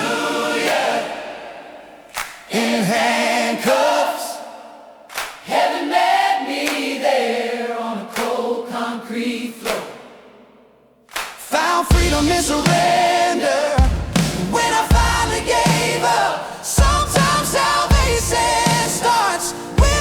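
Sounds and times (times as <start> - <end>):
country-rock song with choir harmonies: 0.0 - 4.8, 5.4 - 10.2, 11.4 - 20.0.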